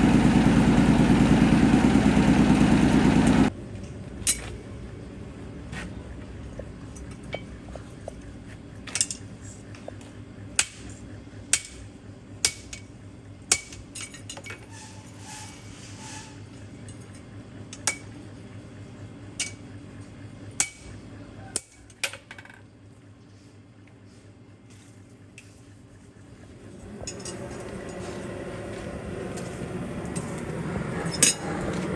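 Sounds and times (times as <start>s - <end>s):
low machine hum: 0.0s - 31.9s
metal clanks: 26.9s - 28.2s, 29.3s - 31.9s.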